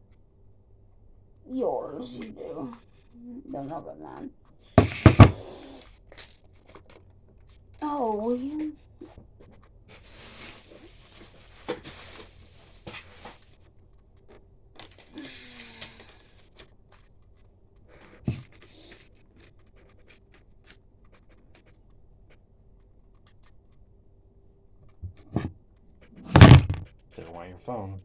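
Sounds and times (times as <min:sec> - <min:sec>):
knock: 0:04.8 - 0:05.5, 0:26.4 - 0:26.9
rustling and scratching of handling: 0:04.8 - 0:23.9.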